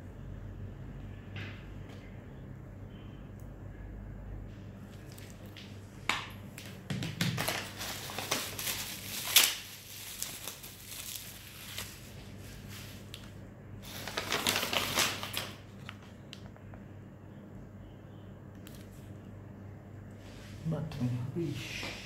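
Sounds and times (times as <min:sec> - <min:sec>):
packaging crinkling: 0:06.6 - 0:16.2.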